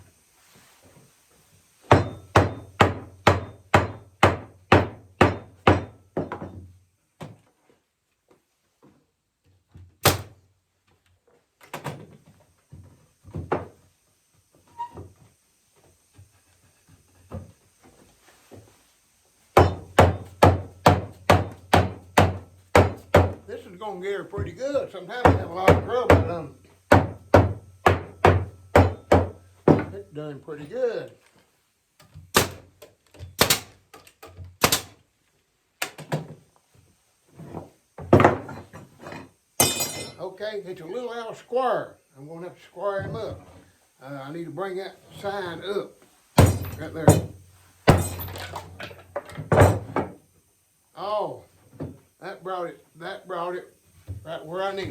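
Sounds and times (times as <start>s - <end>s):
hammering on wooden frame: 1.8s - 6.6s, 19.5s - 23.5s, 25.2s - 30.0s, 32.3s - 32.7s, 33.4s - 33.7s, 34.6s - 34.9s, 46.4s - 48.3s
wooden knocks and thunks: 11.7s - 13.8s, 26.9s - 30.0s, 37.5s - 38.8s.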